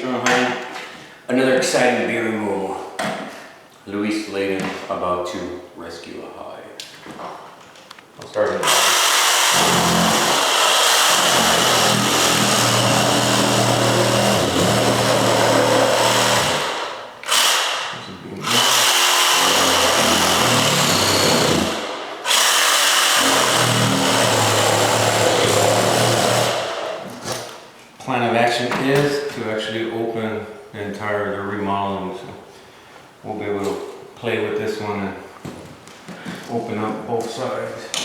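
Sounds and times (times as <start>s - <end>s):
power tool running: 8.6s - 27.0s.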